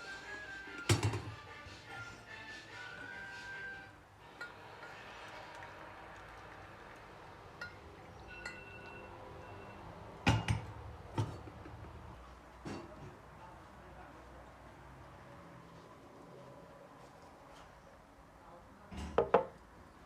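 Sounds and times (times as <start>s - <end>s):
dishes and glassware clinking: 0.8s - 1.4s, 4.3s - 5.0s, 7.6s - 13.2s.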